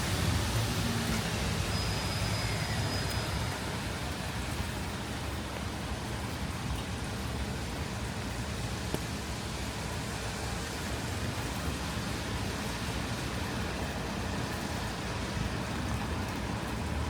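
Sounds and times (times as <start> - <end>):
faint high whine: 0.0 - 4.3
distant traffic: 0.0 - 17.0
steady rain: 0.0 - 17.0
vehicle rumble on wet road: 0.0 - 17.0.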